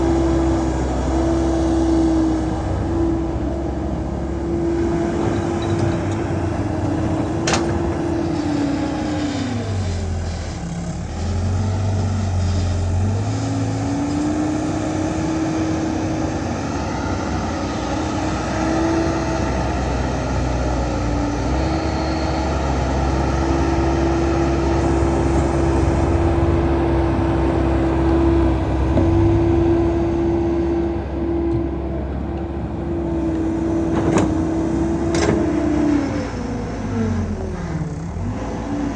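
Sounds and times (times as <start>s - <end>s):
combine harvester running: 0.0s - 38.9s.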